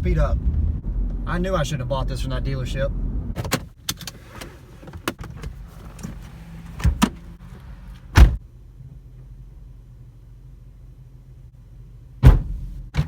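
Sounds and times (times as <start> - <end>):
car interior hum: 0.0 - 13.0
clicks and knocks inside car: 3.4 - 8.4, 12.2 - 13.0.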